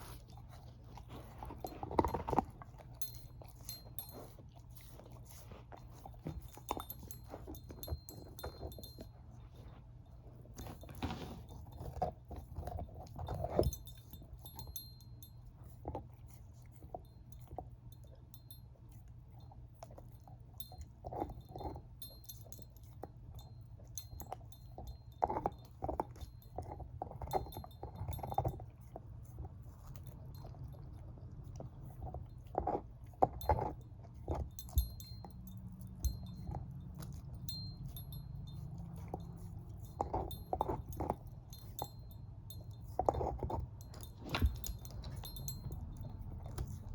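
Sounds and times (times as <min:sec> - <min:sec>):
dog gnawing on a bone: 0:00.0 - 0:46.9.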